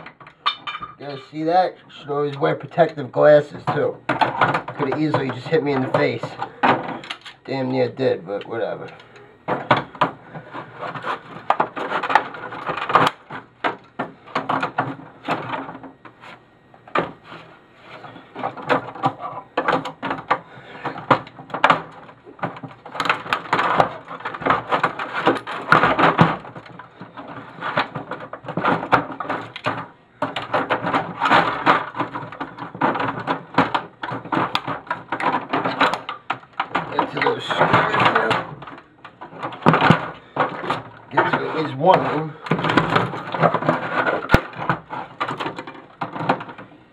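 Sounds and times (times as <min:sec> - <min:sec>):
plastic being pried and snapped: 0:08.9 - 0:16.2, 0:18.1 - 0:46.7.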